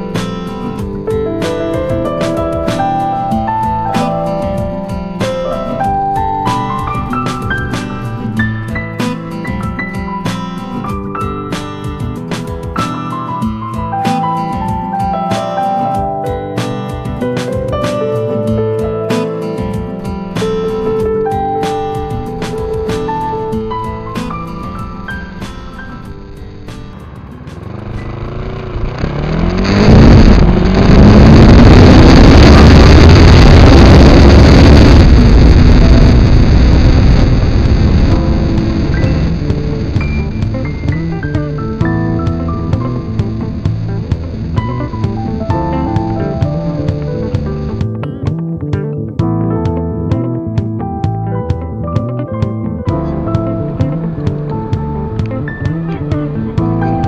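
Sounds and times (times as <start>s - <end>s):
gentle instrumental music: 0.0s - 28.3s, 29.0s - 57.0s
vehicle engine revving: 25.9s - 47.9s, 52.9s - 57.0s.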